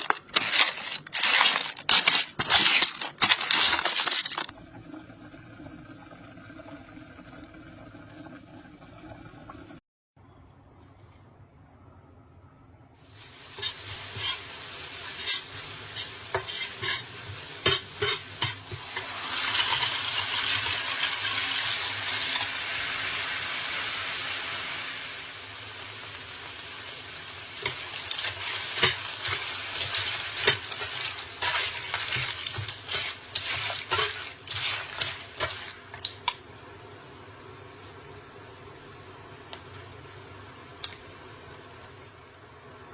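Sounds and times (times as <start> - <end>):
food sizzling in oil: 13.0 - 37.7
spatula scraping a pan: 13.5 - 20.8, 27.6 - 36.1.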